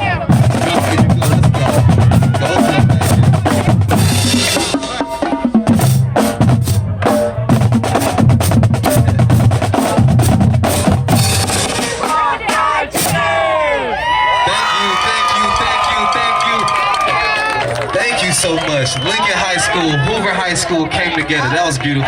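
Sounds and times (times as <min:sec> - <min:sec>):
pounding bass drums: 0:00.0 - 0:13.5.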